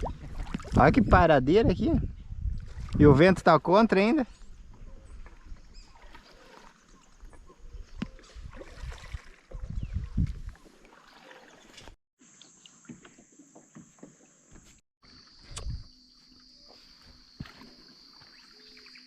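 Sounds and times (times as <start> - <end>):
paddles splashing in water: 0.0 - 1.0, 2.4 - 12.0
wind buffeting microphone: 0.0 - 3.6, 7.3 - 10.6.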